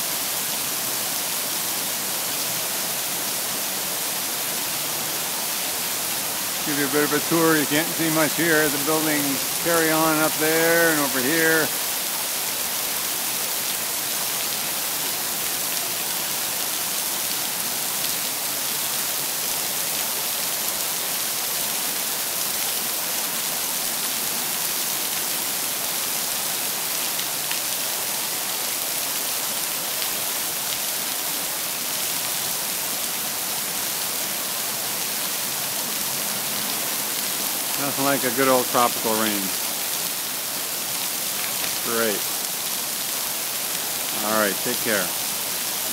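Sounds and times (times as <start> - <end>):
heavy rain hiss: 0.0 - 45.9
water pouring onto glass roof: 37.2 - 39.6.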